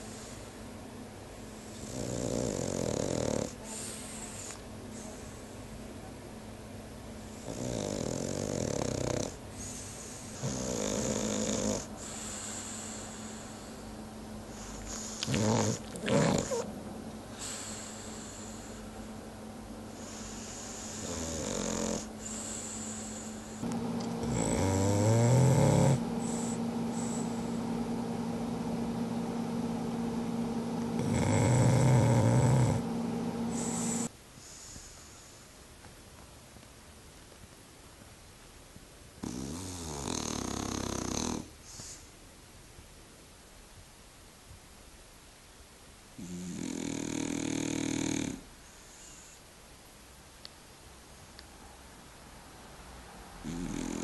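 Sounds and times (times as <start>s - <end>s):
steady hum: 0.0s - 2.1s, 9.3s - 35.7s
dog snoring: 1.7s - 5.1s, 7.3s - 13.9s, 14.5s - 16.7s, 19.9s - 27.6s, 30.9s - 35.4s, 39.2s - 42.0s, 46.2s - 49.4s, 53.4s - 54.0s.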